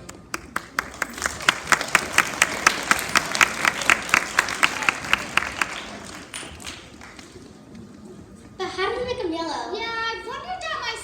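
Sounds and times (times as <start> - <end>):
close hands clapping: 0.0 - 7.6
audience applauding: 0.1 - 7.7.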